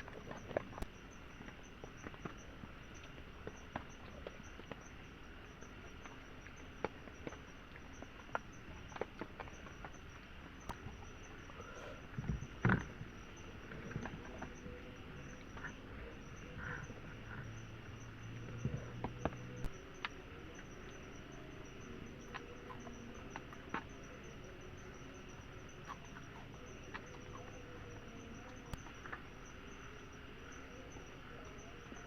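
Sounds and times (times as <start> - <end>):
insects trilling: 0.0 - 32.0.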